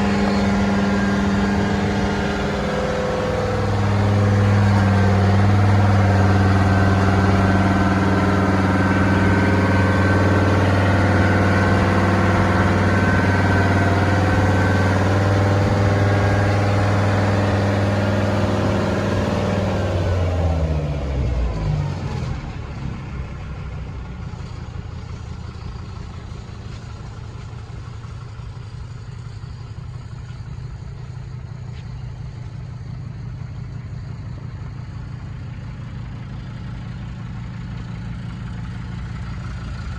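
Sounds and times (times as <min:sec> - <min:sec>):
low hum: 0:00.0 - 0:20.5
engine running and winding down: 0:00.0 - 0:32.2.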